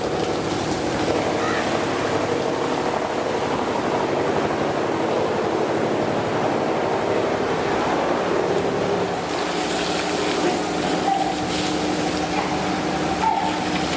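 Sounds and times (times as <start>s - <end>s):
machine running with rushing hiss: 0.0s - 13.9s.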